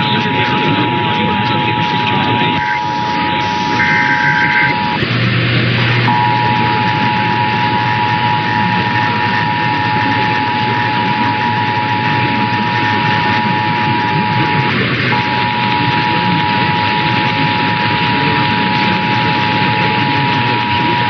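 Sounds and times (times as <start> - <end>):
loud static hiss: 0.0 - 21.0
low hum: 0.0 - 21.0
steady alert tone: 2.6 - 14.6.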